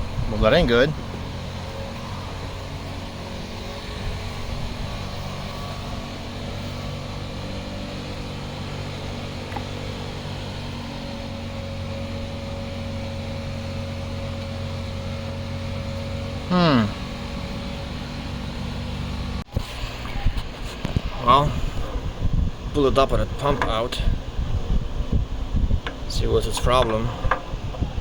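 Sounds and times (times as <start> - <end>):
pressure washer engine running: 0.0 - 28.0.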